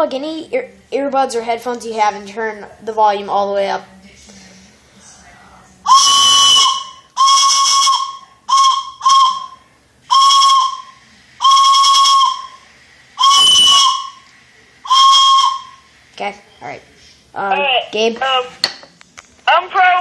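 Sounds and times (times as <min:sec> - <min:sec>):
train whistle blown by mouth: 0:05.9 - 0:15.9.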